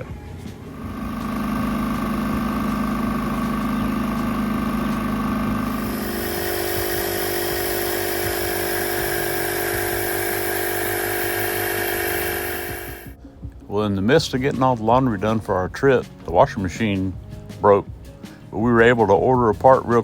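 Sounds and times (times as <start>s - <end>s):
engine idling: 0.0s - 13.2s.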